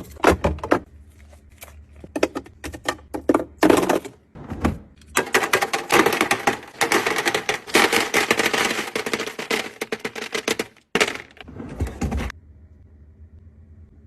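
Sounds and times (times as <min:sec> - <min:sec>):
small hard objects clattering: 0:05.1 - 0:12.2.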